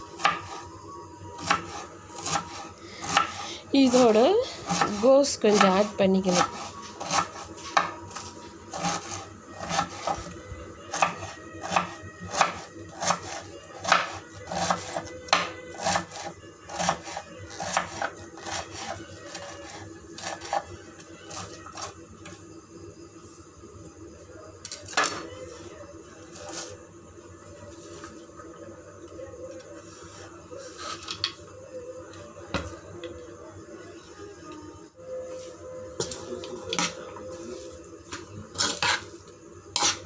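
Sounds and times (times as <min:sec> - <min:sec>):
spoon scraping a pan: 0:36.0 - 0:40.0.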